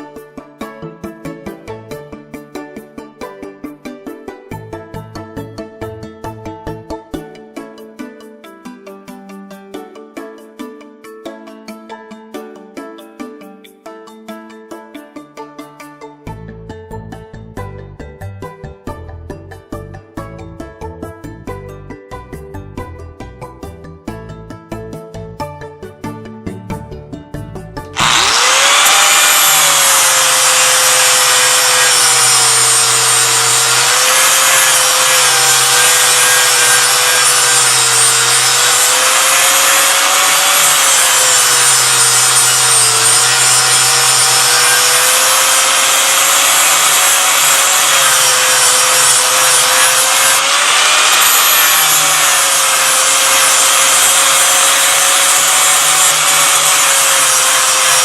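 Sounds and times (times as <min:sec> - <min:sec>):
electric grinder grinding steel: 0:28.0 - 0:58.0.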